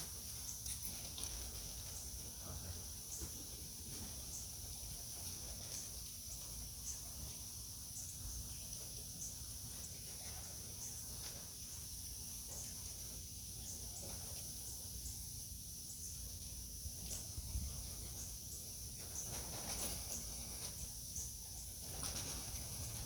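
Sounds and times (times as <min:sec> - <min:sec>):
high-pitched insect chorus: 0:00.0 - 0:23.0.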